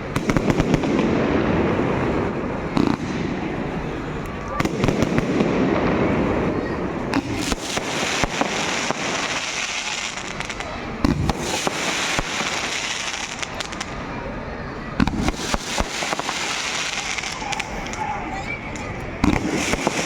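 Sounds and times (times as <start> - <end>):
fireworks bangs and crackles: 0.0 - 20.0
loud firework bangs: 0.0 - 20.0.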